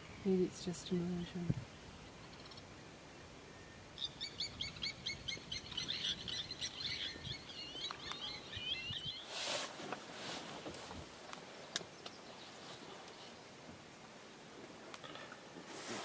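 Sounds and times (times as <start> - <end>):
songbird singing: 0.0 - 10.1, 10.7 - 15.6.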